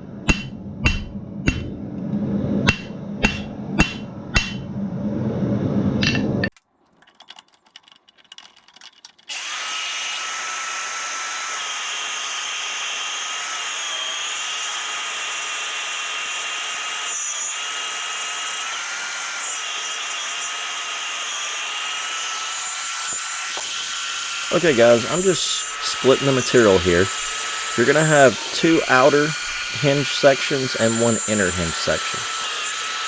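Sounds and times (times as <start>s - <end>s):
power tool cutting steel: 9.3s - 33.0s.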